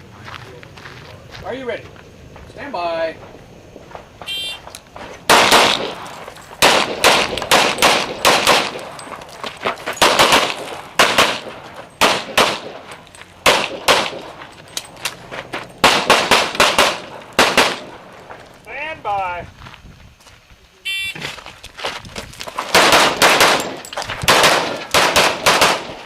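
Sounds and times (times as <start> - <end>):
pistol shots: 5.3 - 9.0, 10.0 - 14.4, 15.8 - 18.0, 22.7 - 26.0.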